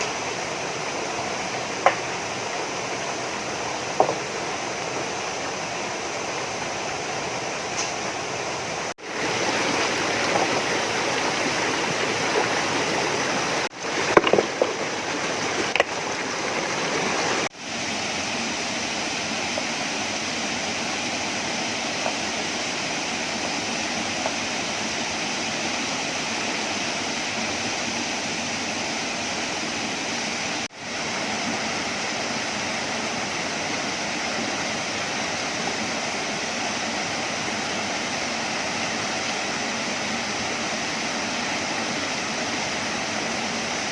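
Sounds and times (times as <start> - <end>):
stream water rushing: 0.0 - 43.9.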